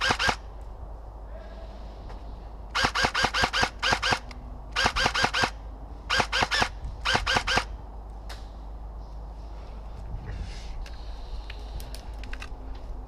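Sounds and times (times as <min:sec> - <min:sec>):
airsoft gun rapid shots: 0:00.0 - 0:00.4, 0:02.7 - 0:07.7.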